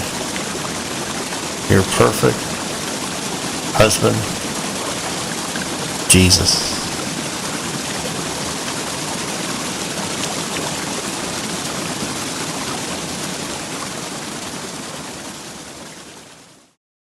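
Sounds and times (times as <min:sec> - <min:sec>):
river rushing water: 0:00.0 - 0:16.3.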